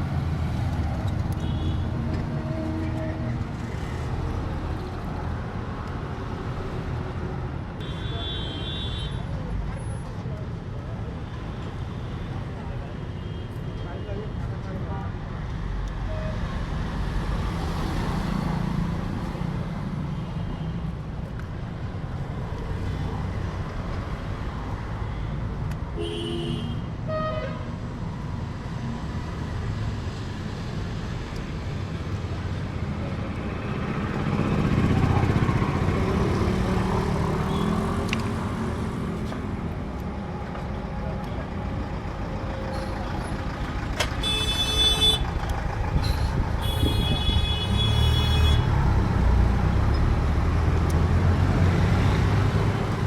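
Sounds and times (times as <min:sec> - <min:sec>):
road traffic passing: 0:00.0 - 0:53.0
car horn toot: 0:26.0 - 0:27.6, 0:44.2 - 0:45.3, 0:46.0 - 0:48.7.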